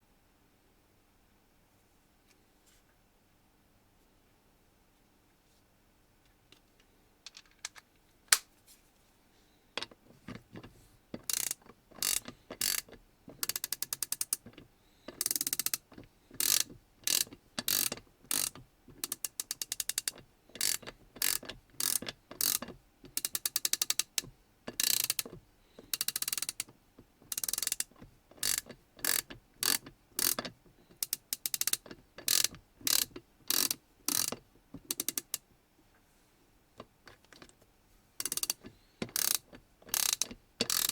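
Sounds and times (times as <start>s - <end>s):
ratchet handle clicking: 10.6s - 26.7s, 27.3s - 35.4s, 38.2s - 40.9s.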